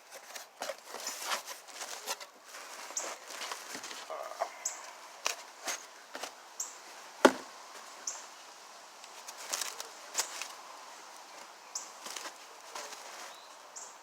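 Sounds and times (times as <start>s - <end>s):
packaging taps and rustles: 0.0s - 4.1s
sharp knock on cardboard box: 7.2s - 7.5s.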